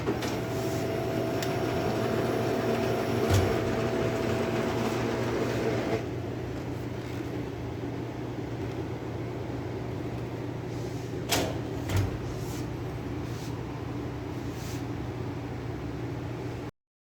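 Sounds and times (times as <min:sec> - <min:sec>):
laser printer humming: 0:00.0 - 0:06.1.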